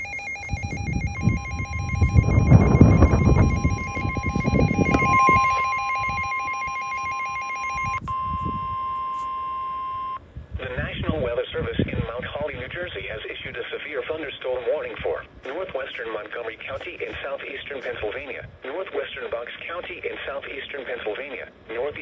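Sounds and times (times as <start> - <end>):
fast warbling alarm: 0.0 - 8.4
steady warning alarm tone: 0.0 - 10.2
wind on microphone: 0.4 - 9.0.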